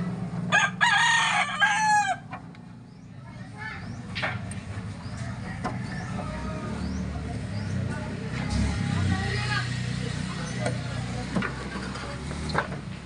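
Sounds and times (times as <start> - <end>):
rooster crowing: 0.5 - 2.4.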